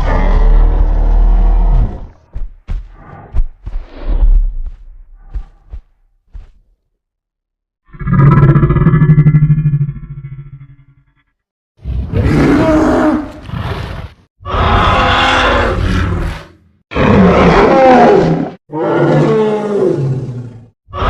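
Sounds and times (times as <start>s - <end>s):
dinosaur roar: 0.0s - 2.2s, 11.8s - 21.0s.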